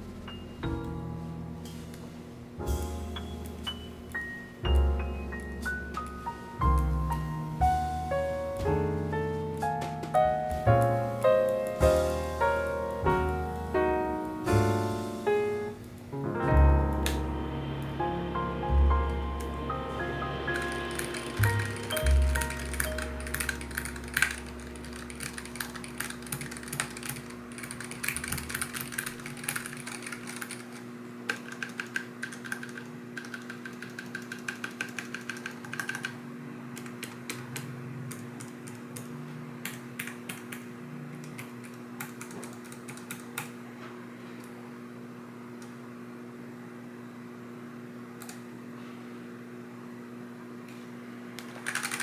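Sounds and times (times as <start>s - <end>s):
steady low hum: 0.0s - 30.7s.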